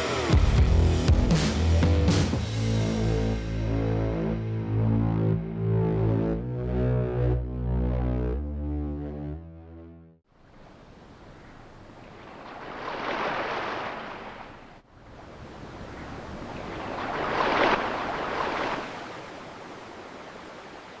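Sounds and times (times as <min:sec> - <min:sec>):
surf breaking: 0:12.0 - 0:14.7, 0:16.4 - 0:19.4.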